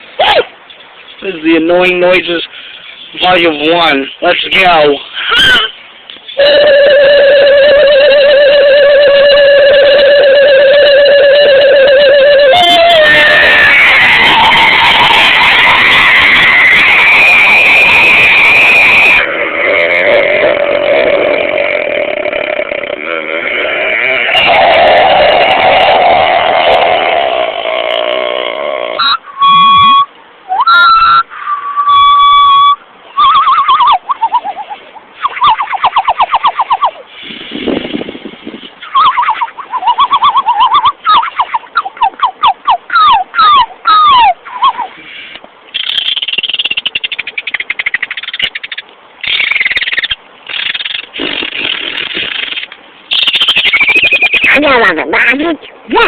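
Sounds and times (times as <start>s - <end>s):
high squealing whistling tones: 1.1s - 37.0s, 38.8s - 54.7s
man making rasping mouth noise: 4.5s - 31.2s, 50.5s - 54.6s
warbling tones: 6.3s - 48.6s.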